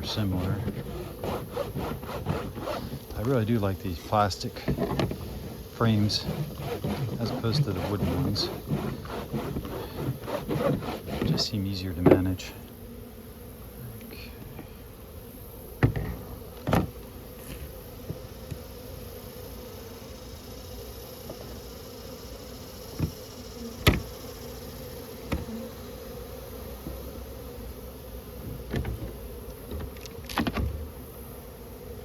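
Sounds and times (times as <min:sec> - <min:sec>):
honeybees buzzing: 0:00.0 - 0:32.0
handling knocks and clicks: 0:04.6 - 0:05.5.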